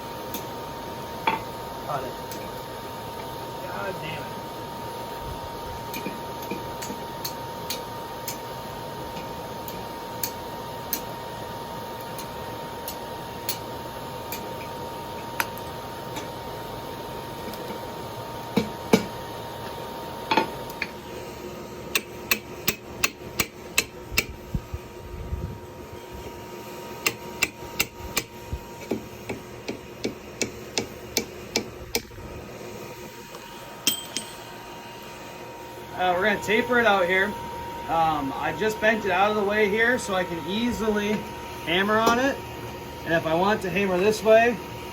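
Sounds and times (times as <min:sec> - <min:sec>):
steady hum: 0:00.0 - 0:44.9
hammer striking hot steel on anvil: 0:05.9 - 0:08.5, 0:09.1 - 0:11.2, 0:12.2 - 0:13.7, 0:18.6 - 0:19.2, 0:21.9 - 0:24.4, 0:27.0 - 0:32.1, 0:33.8 - 0:34.6.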